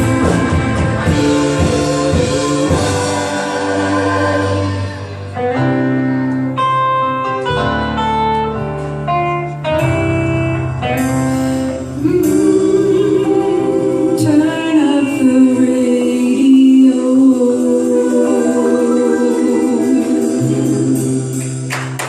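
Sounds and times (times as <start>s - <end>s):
singing over instrumental music: 0.0s - 6.1s, 12.0s - 21.8s.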